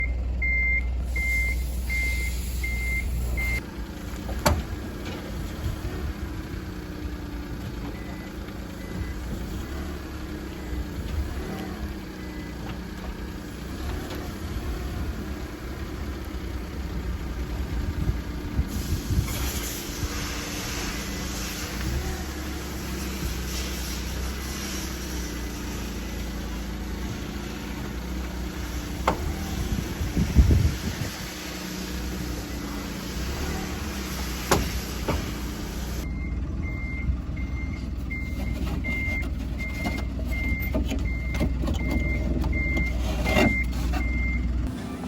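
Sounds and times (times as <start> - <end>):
reverse warning chime beeping: 0.0 - 3.6, 36.0 - 44.5
car rolling with low rumble: 0.0 - 45.0.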